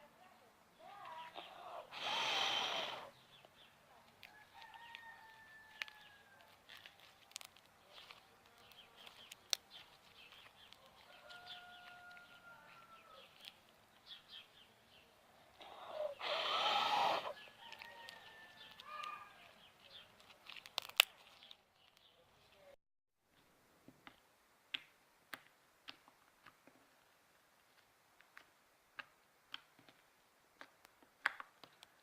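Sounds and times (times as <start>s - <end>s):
rooster crowing: 4.3s - 6.6s, 10.8s - 13.3s, 15.9s - 19.4s
drawn-out fowl calls: 15.6s - 19.4s.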